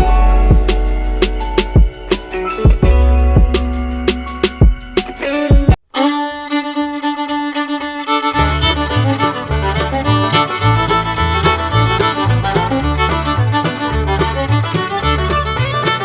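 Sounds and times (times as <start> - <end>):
pulsing bass line: 0.0 - 5.8, 8.4 - 16.0
fiddle melody: 0.0 - 16.0.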